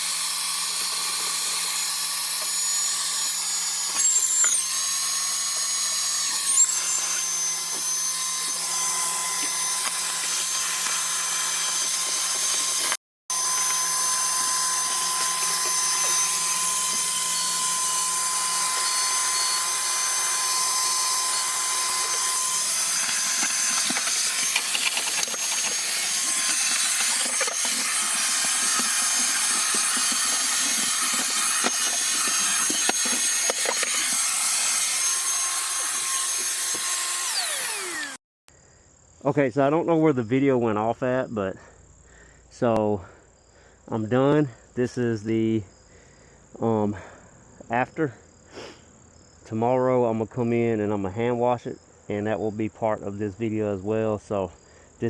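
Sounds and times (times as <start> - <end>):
shop vacuum motor whine: 0.0 - 38.2.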